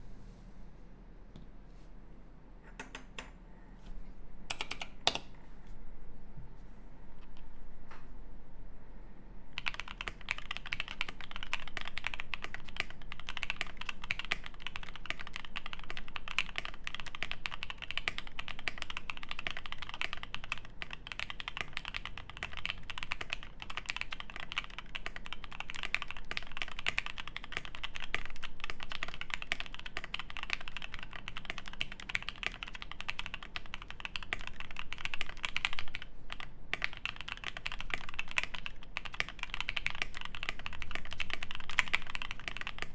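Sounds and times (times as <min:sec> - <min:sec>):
mechanical keyboard typing: 0:04.5 - 0:05.3, 0:09.6 - 0:42.9.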